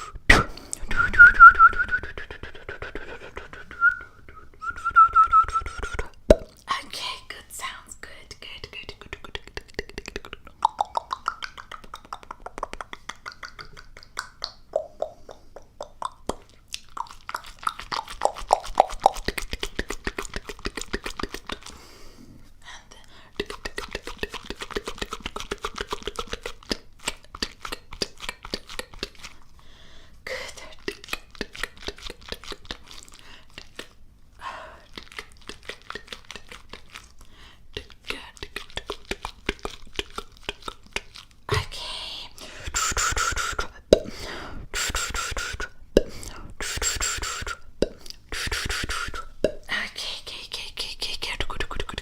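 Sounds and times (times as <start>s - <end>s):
rapid clicking and popping: 8.9s - 21.6s.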